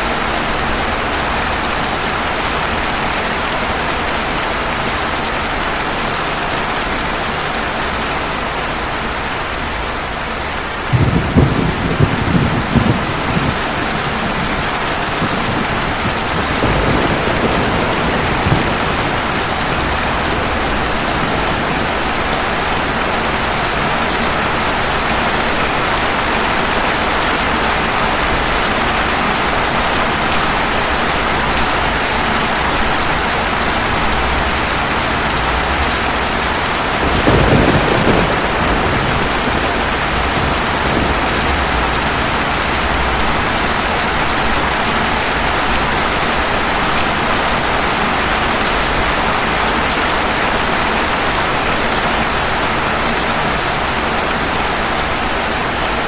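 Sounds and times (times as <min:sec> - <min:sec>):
rain falling on pavement: 0:00.0 - 0:56.0
thunder: 0:10.8 - 0:25.4, 0:33.8 - 0:46.2.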